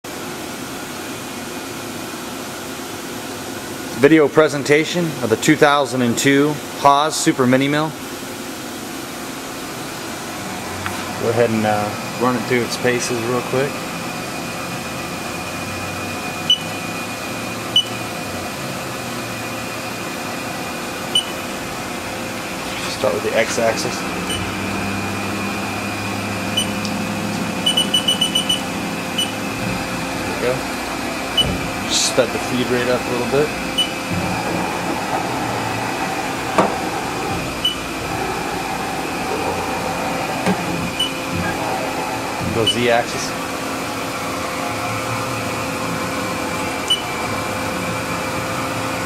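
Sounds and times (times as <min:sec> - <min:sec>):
milling machine humming: 0:09.4 - 0:49.0
control panel beeps: 0:16.5 - 0:16.7, 0:17.8 - 0:18.0, 0:21.1 - 0:21.4, 0:26.6 - 0:26.9, 0:27.6 - 0:29.4, 0:33.8 - 0:34.0, 0:37.6 - 0:37.9, 0:40.9 - 0:41.2, 0:46.9 - 0:47.1
thin high whine: 0:21.1 - 0:48.5.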